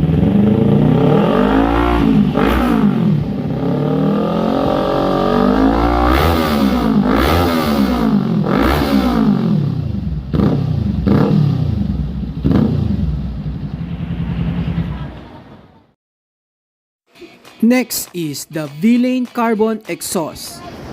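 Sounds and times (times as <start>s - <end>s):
motorcycle engine revving: 0.0s - 15.5s.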